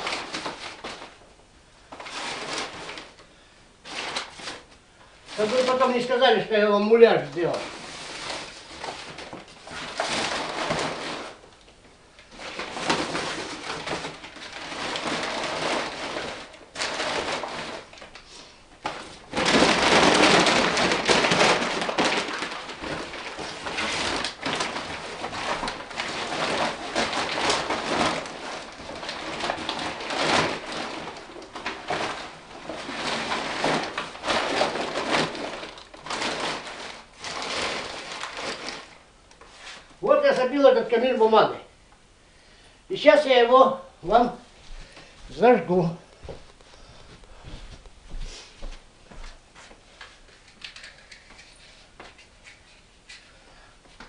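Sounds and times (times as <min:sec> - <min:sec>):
paper crumpling and rustling: 0:00.0 - 0:01.3, 0:01.9 - 0:04.7, 0:05.3 - 0:40.7.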